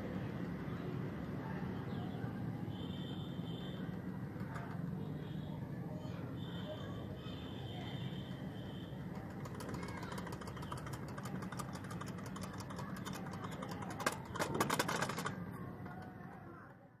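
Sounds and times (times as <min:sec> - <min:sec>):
plastic toy parts clicking: 0:09.1 - 0:16.4.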